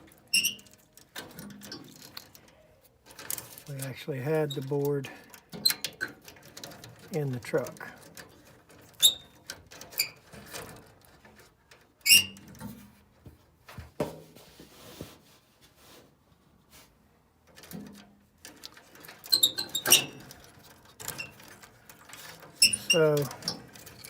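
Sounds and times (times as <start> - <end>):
short high squeaks: 0.3 - 0.7, 9.0 - 9.4, 12.0 - 12.4, 19.3 - 20.2, 22.5 - 24.0.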